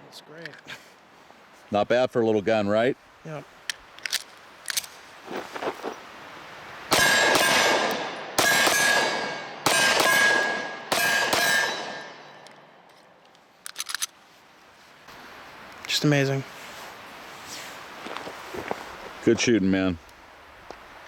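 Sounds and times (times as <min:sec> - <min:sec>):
pistol shots: 0:06.9 - 0:12.4
metallic ringing: 0:08.4 - 0:12.5.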